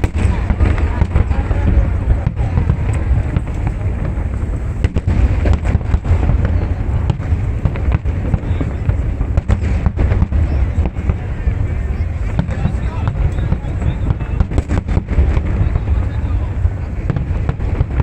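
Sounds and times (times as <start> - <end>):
fireworks bangs and cracks: 0.0 - 18.0
fireworks booming: 0.0 - 18.0.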